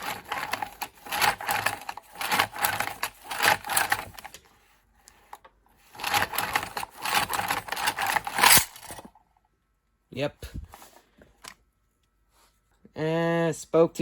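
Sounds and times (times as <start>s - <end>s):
pull-starter rope ratcheting: 0.0s - 4.4s, 5.8s - 9.1s.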